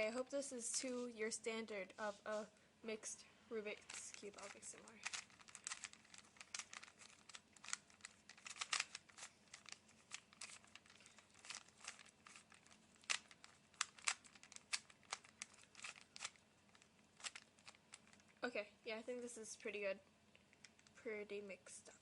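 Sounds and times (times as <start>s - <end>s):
puzzle cube clicking turns: 3.8s - 18.4s, 20.3s - 21.0s.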